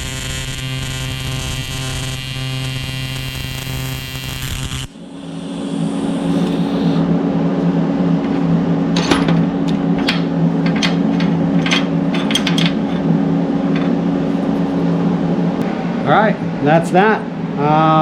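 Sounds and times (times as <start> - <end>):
low machine hum: 4.8 - 18.0
sharp metallic clicks and clinks: 9.0 - 13.1.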